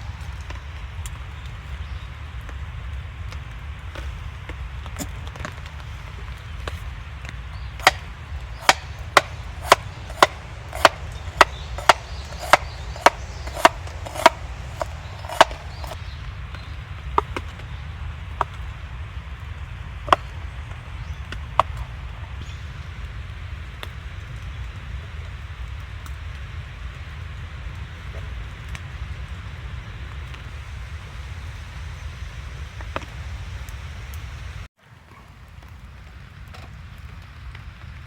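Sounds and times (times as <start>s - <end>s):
knife chopping on cutting board: 8.6s - 16.0s.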